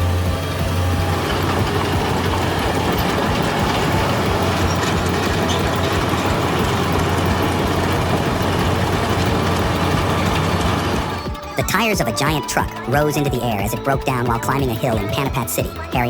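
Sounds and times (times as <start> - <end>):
heavy machinery engine drone: 0.0 - 16.0
mechanical rattling and clanking: 0.4 - 11.5.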